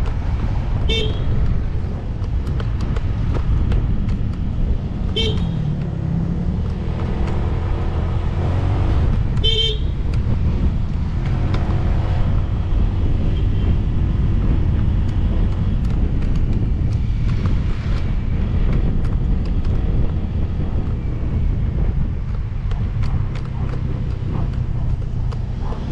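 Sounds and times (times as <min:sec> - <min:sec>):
motorcycle engine and road rumble: 0:00.0 - 0:25.9
vehicle horn toot: 0:00.9 - 0:01.3, 0:05.1 - 0:05.6, 0:09.4 - 0:10.0.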